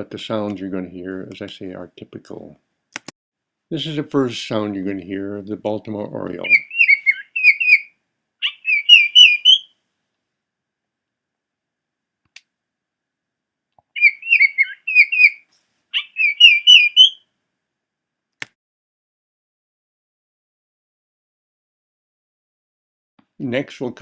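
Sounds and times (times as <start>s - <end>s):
bird whistling song: 6.5s - 9.7s, 14.0s - 15.4s, 16.0s - 17.2s.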